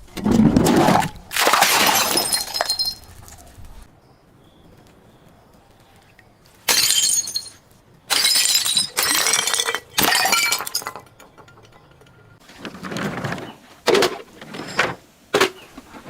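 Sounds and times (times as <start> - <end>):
glass bottles smashing: 1.4 - 3.4, 6.7 - 12.4.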